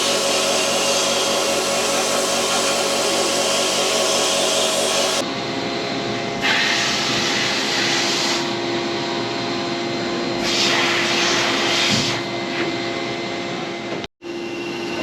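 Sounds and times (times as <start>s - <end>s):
steady machine hum: 0.0s - 6.4s.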